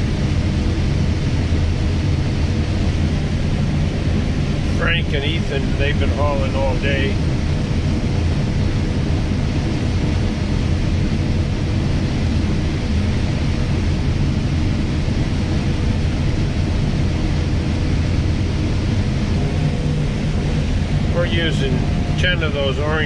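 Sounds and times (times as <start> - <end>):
combine harvester droning: 0.0 - 23.0
faint steady whine: 0.0 - 23.0.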